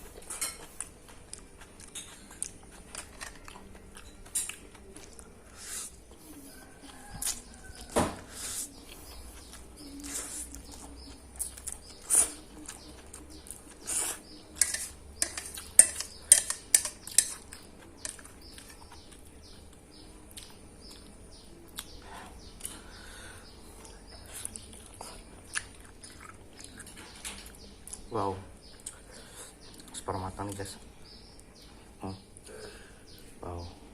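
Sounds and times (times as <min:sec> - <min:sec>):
cutlery clicking against a dish: 0:14.6 - 0:18.8.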